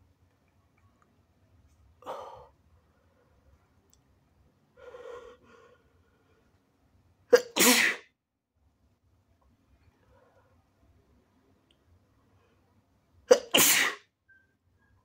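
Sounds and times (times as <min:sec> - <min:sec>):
person sneezing: 0:07.3 - 0:08.1, 0:13.3 - 0:14.1.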